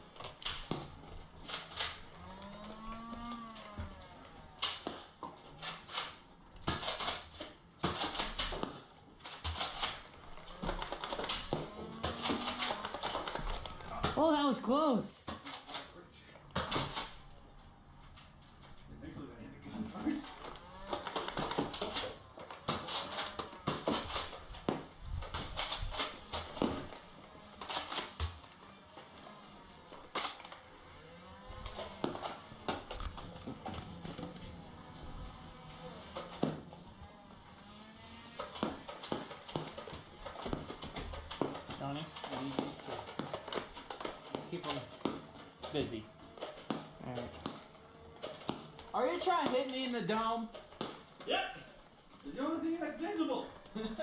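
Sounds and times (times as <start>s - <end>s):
foam dart blasters firing: 0.1s - 14.5s, 20.3s - 33.6s.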